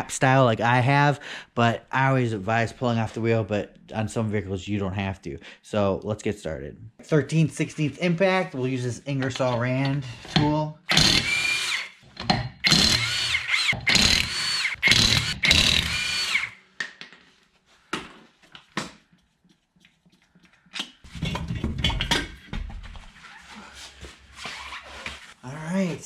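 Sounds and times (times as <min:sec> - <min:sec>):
impact wrench bursts: 0:10.9 - 0:12.0, 0:12.6 - 0:16.6.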